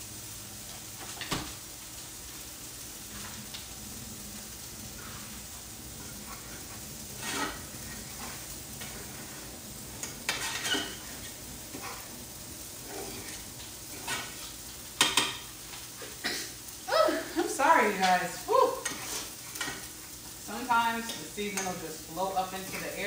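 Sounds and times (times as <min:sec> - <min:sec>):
food sizzling in a pan: 0:00.0 - 0:23.0
utensil scraping a pan: 0:05.0 - 0:12.1, 0:12.8 - 0:15.5, 0:18.0 - 0:20.0.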